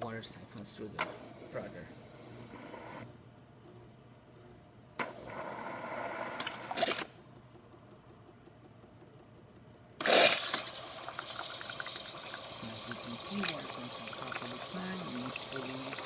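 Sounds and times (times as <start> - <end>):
faint regular ticking: 7.2 - 10.0
milk frother hissing and sputtering: 10.0 - 16.0.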